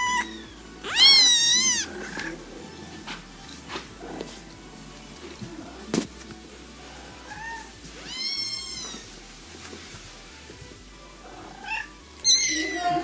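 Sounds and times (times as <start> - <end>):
cat meowing: 0.0 - 2.4, 6.9 - 9.1, 11.3 - 13.0.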